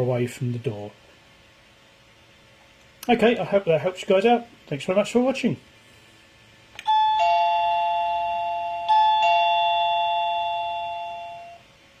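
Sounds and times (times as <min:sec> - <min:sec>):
doorbell ding-dong chime: 0:06.8 - 0:11.6.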